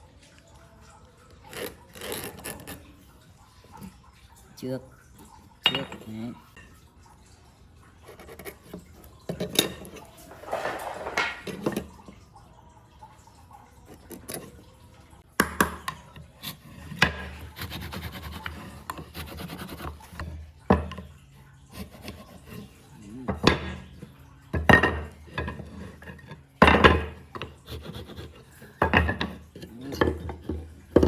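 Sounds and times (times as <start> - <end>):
rough rasping on wood: 17.4 - 20.0, 21.7 - 22.7, 27.6 - 28.5.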